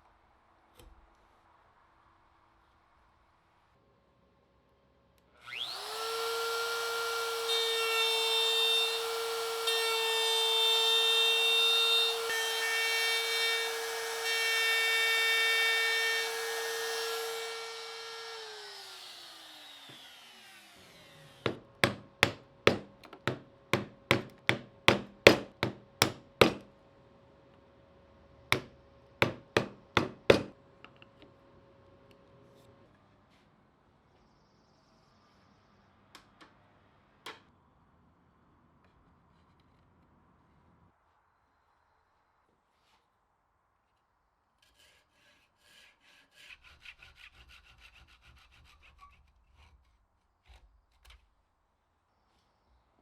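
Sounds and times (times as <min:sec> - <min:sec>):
power tool cutting wood: 0:05.4 - 0:26.6
sharp knocks on wood: 0:21.5 - 0:26.7, 0:28.6 - 0:30.6.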